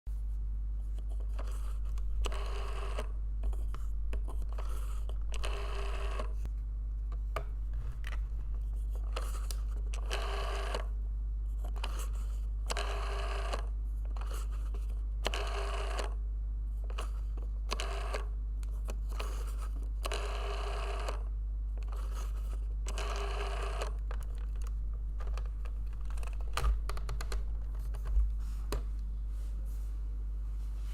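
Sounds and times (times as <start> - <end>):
steady low hum: 0.1 - 30.9
rotary telephone dial whirring: 1.0 - 6.5, 8.0 - 11.0, 11.6 - 16.2, 16.8 - 28.2.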